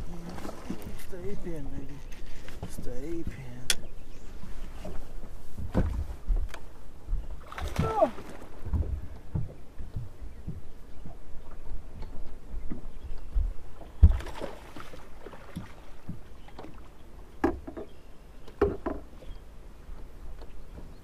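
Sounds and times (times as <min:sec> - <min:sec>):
water slapping boat hull: 0:00.0 - 0:21.0
wind rumbling: 0:03.2 - 0:16.4
thump and short splash: 0:05.6 - 0:06.2, 0:07.4 - 0:09.5, 0:14.0 - 0:16.7.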